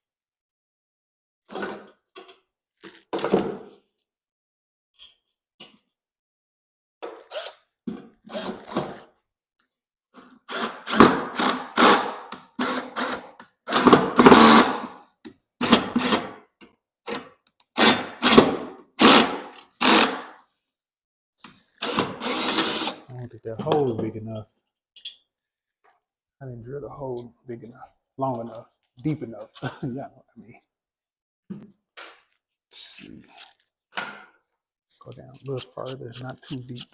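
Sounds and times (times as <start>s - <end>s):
power drill driving screws into wood: 7.1s - 7.6s, 8.2s - 9.1s, 10.4s - 15.0s, 15.6s - 16.4s, 17.1s - 20.4s, 21.8s - 23.0s.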